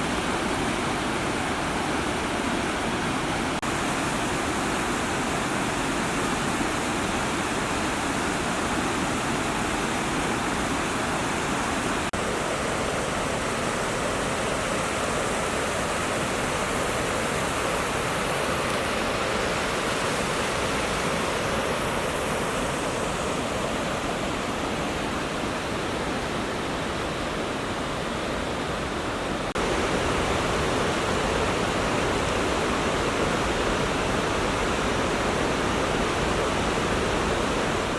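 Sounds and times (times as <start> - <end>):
waterfall rushing: 0.0 - 37.9.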